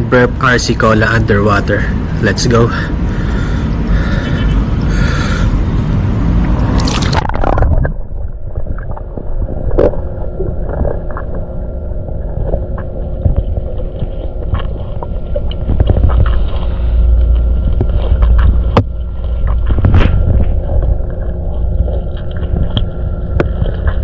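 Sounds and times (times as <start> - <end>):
underwater gurgling and bubbling: 3.0 - 24.0
splash into water: 6.6 - 8.2.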